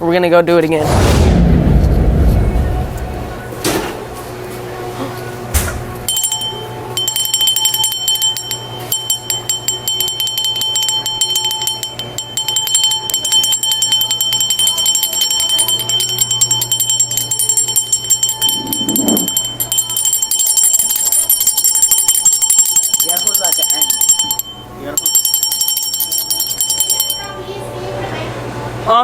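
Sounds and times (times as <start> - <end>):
counter service bell dinging: 6.0 - 27.9.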